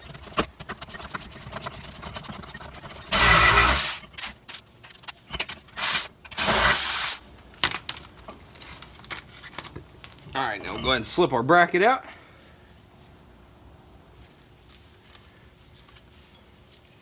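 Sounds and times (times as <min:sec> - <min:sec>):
power tool spinning bolts: 0:00.0 - 0:07.2.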